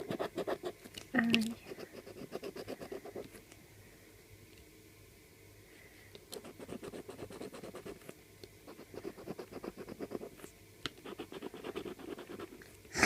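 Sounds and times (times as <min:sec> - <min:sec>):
scratchcard being scratched: 0:06.4 - 0:08.0, 0:09.0 - 0:10.4, 0:11.0 - 0:13.0.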